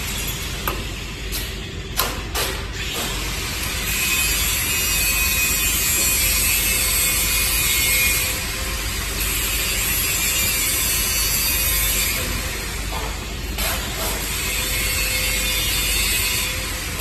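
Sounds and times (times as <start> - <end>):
dense mechanical machine noise: 0.0 - 17.0.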